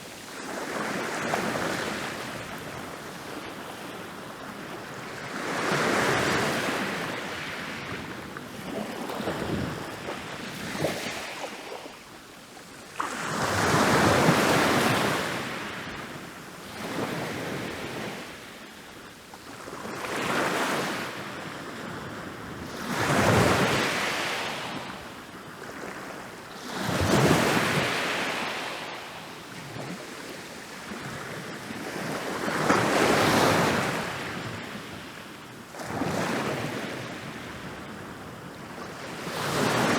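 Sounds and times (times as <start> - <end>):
ocean waves breaking on beach: 26.5 - 39.9.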